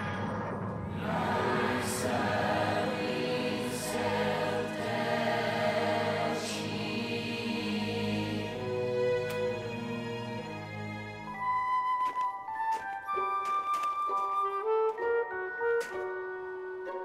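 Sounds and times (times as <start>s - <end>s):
choir singing held notes: 0.8s - 11.2s.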